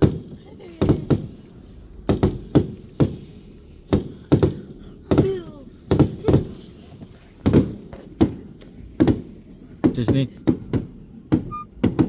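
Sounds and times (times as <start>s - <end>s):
falling firework squeal: 11.5s - 11.8s.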